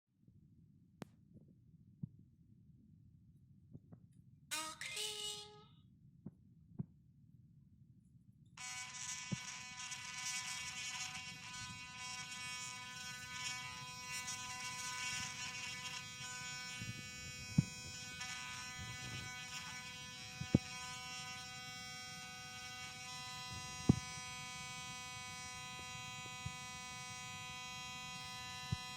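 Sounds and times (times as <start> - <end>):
electric toothbrush buzzing: 8.6 - 28.9.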